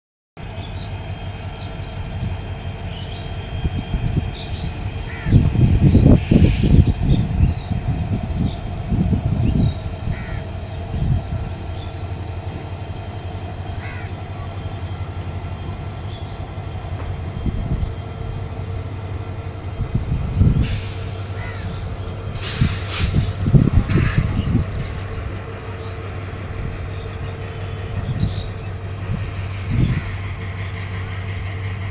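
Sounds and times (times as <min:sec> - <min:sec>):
train wagons rumbling on track: 0:00.4 - 0:31.9
screeching wheel noise: 0:03.1 - 0:19.1.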